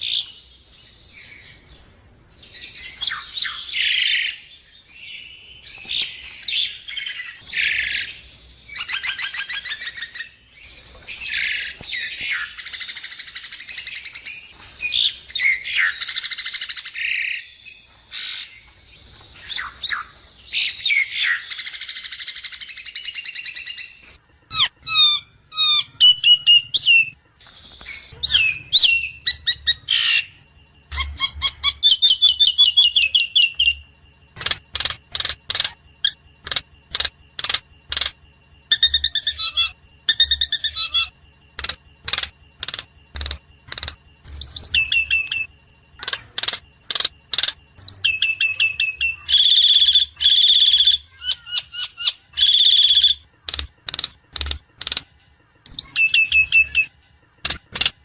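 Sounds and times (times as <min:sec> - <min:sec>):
bird chattering and squawking: 0:27.9 - 0:33.8, 0:34.4 - 0:55.1
bird whistled notes: 0:47.8 - 0:53.2.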